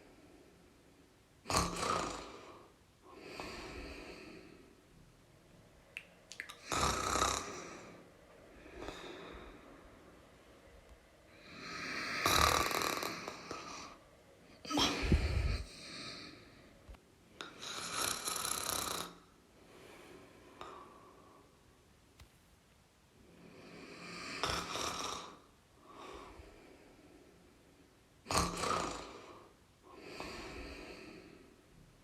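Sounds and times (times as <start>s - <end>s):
person snoring: 1.5s - 4.6s, 6.6s - 8.0s, 11.3s - 14.0s, 17.5s - 19.3s, 23.6s - 26.3s, 28.3s - 31.5s
faint breaths: 2.2s - 5.8s, 6.7s - 18.3s, 19.4s - 21.8s, 23.2s - 32.0s.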